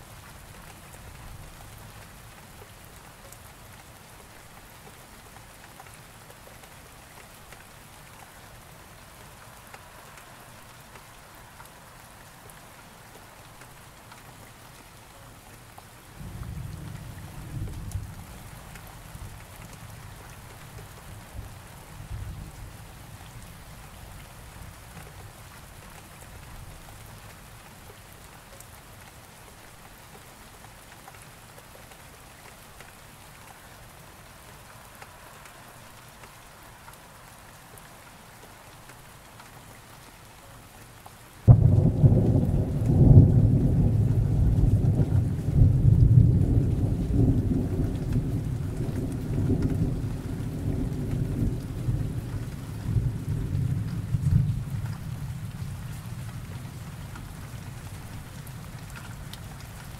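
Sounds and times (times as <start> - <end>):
steady rain falling: 0.0 - 59.9
loud thunderclap: 41.5 - 47.8
low thunder rumble: 41.5 - 56.4.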